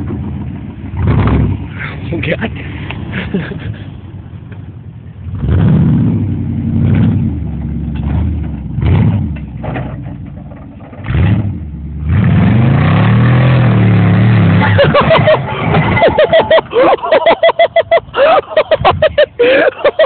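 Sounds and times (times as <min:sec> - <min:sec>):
pickup truck engine revving hard: 0:01.0 - 0:01.7, 0:05.3 - 0:07.4, 0:08.0 - 0:09.3, 0:11.1 - 0:16.8.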